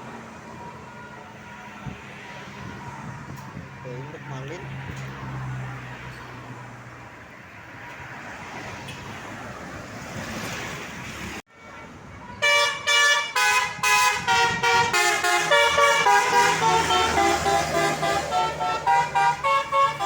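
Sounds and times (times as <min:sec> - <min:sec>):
musical bus horn: 0:11.6 - 0:20.0.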